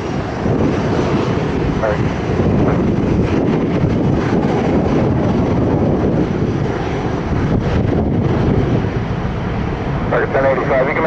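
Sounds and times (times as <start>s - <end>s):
jet engines rumbling: 0.0s - 11.0s.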